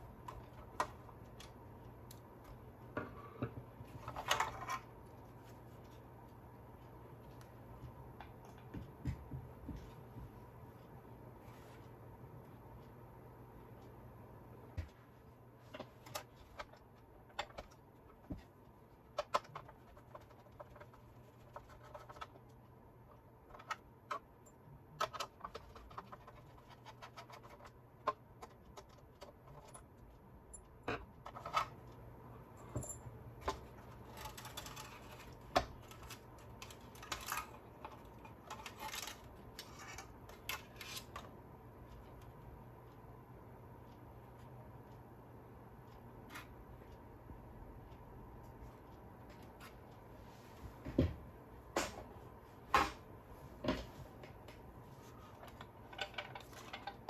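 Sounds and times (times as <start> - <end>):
small parts and tools clicking: 3.9 - 6.0, 15.6 - 32.0, 32.6 - 42.3, 55.1 - 57.0.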